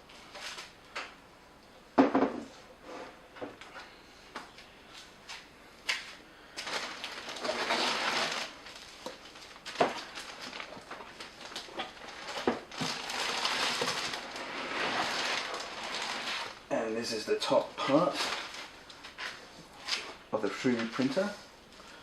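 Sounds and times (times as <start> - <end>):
packaging rustling and scraping: 6.6 - 16.6, 17.8 - 21.3.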